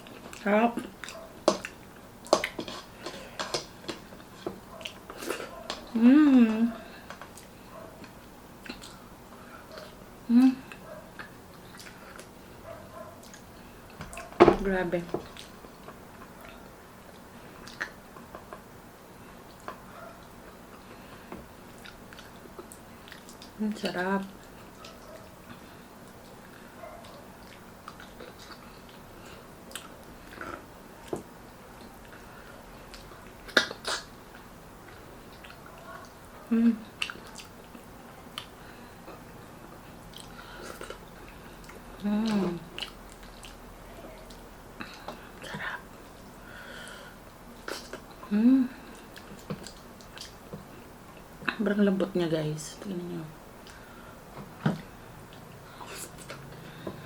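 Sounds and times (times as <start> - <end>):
person chewing with mouth clicks: 0.0 - 9.1, 9.7 - 12.4, 13.2 - 14.3, 15.2 - 18.6, 20.7 - 23.6, 24.4 - 46.3, 47.6 - 51.6, 53.6 - 54.0, 54.8 - 57.0
person humming: 5.9 - 6.9, 10.3 - 10.7, 36.5 - 36.9, 42.0 - 42.7, 48.2 - 48.8.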